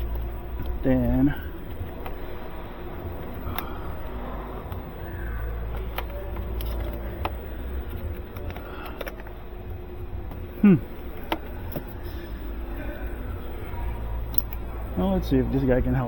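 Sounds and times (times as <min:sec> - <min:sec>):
clicks of parts being handled: 0:00.0 - 0:09.4, 0:11.1 - 0:12.2, 0:14.2 - 0:14.7
steady low hum: 0:00.0 - 0:16.0.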